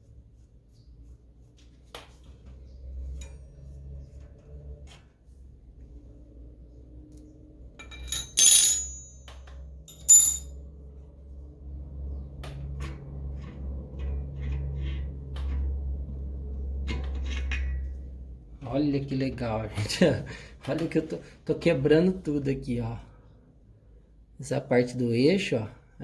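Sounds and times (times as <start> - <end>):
metallic clinks of bicycle parts: 7.8 - 10.5.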